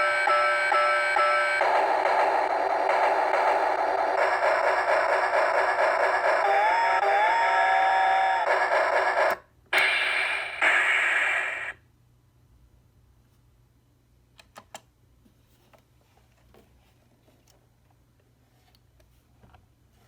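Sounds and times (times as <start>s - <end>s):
steam train hissing from small speaker: 9.8s - 11.8s.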